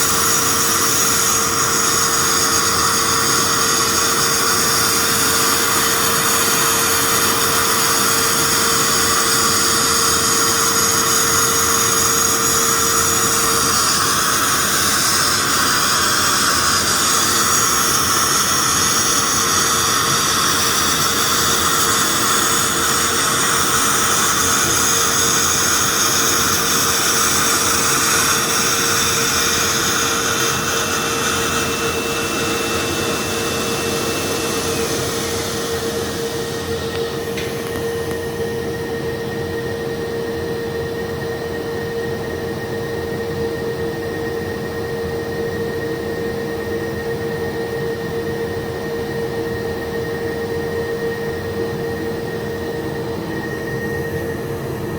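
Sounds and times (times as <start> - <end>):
thin high whistle: 43.9 - 54.9.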